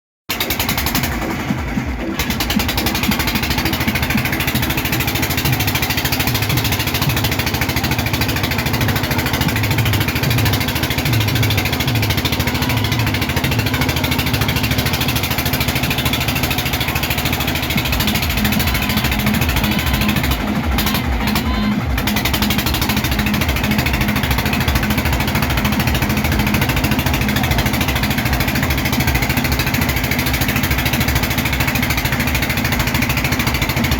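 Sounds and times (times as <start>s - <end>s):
small boat engine running: 0.3s - 33.9s.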